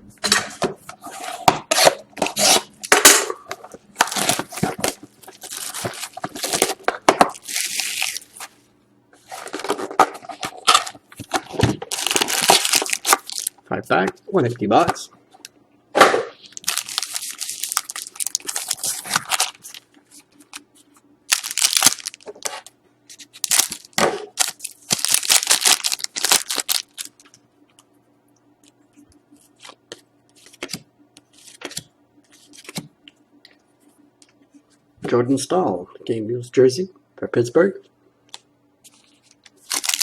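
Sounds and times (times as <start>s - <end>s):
packaging tearing and crinkling: 4.0s - 8.5s, 9.2s - 13.6s, 16.5s - 19.9s, 21.3s - 27.4s, 38.9s - 40.0s.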